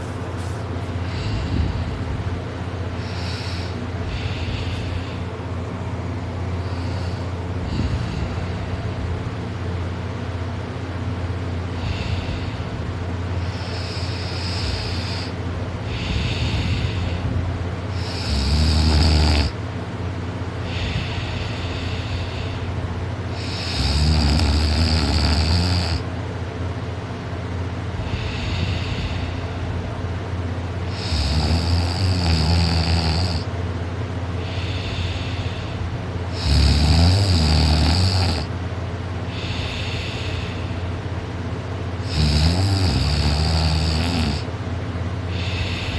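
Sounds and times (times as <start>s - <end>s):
steady low hum: 0.0s - 45.9s
person snoring: 1.0s - 2.1s, 3.0s - 5.3s, 6.6s - 8.9s, 11.8s - 12.7s, 13.4s - 17.3s, 17.9s - 19.6s, 23.3s - 26.1s, 28.0s - 29.4s, 30.9s - 33.5s, 34.4s - 38.5s, 39.3s - 40.8s, 42.0s - 44.5s, 45.3s - 45.9s.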